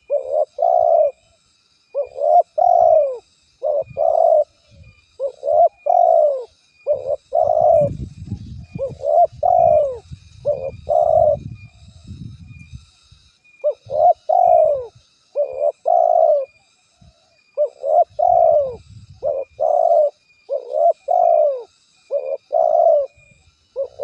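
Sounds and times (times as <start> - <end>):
dove cooing: 0.0 - 1.2, 1.9 - 8.0, 8.6 - 11.5, 13.6 - 16.6, 17.6 - 24.0.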